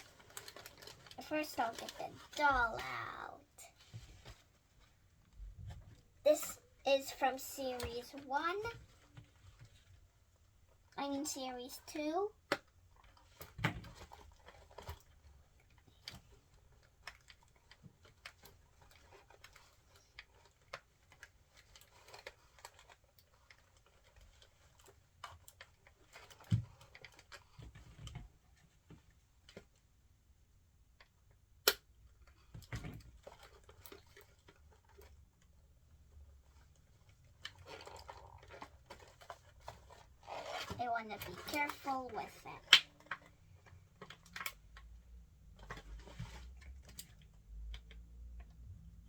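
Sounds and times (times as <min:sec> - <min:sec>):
plastic packaging crinkling: 0:00.0 - 0:03.3.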